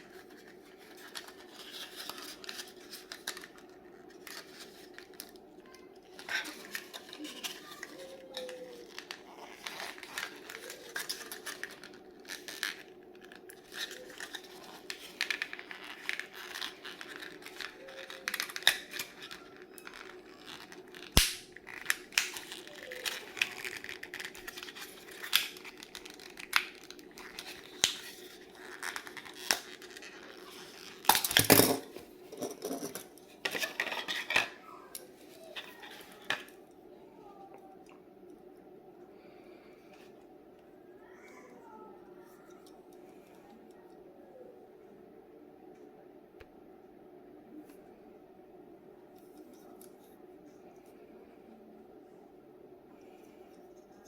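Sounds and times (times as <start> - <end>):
packaging crinkling and tearing: 0.0 - 36.6.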